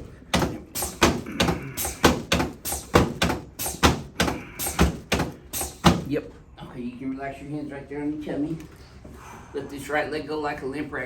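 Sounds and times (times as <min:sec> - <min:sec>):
chiropractic equipment thunks: 0:00.0 - 0:06.2.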